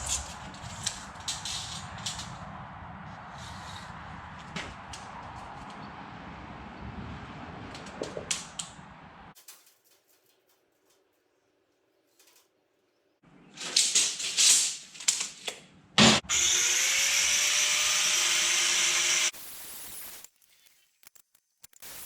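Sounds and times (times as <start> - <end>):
power tool grinding steel: 16.2 - 19.3.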